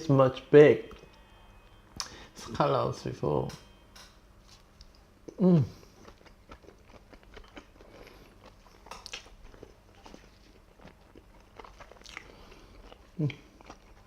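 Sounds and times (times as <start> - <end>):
person chewing: 4.5 - 14.0.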